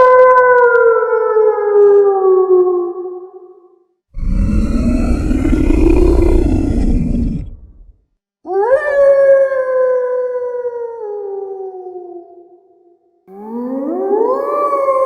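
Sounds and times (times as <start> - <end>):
wolf-like howl: 4.2 - 7.8, 13.3 - 15.0.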